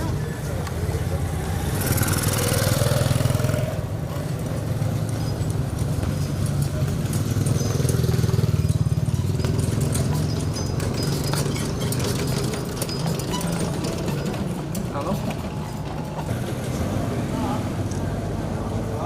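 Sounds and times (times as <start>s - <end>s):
engine humming: 0.0s - 19.0s
clicks and clatter: 4.4s - 16.3s.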